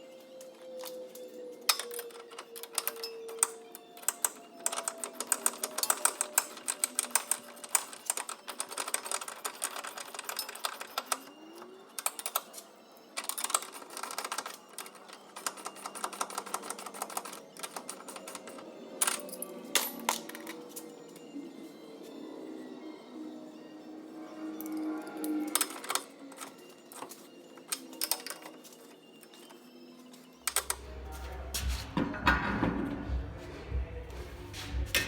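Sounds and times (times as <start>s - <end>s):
hand ratchet clicking: 13.2s - 18.5s.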